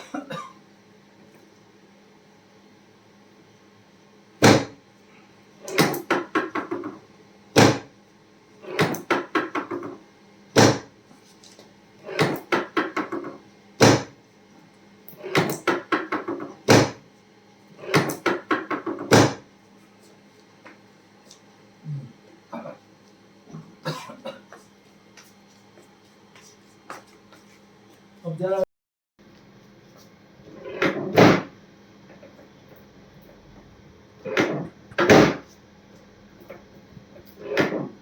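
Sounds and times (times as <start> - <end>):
sharp knock on treatment table: 4.4 - 4.8, 7.6 - 7.9, 10.6 - 10.9, 13.8 - 14.2.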